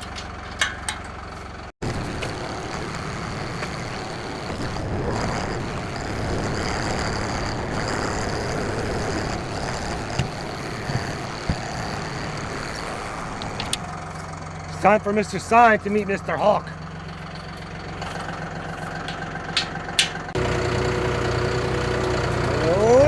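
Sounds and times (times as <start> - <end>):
sharp metal clanks: 0.0 - 1.7, 17.3 - 20.4
loader engine running: 0.0 - 23.0.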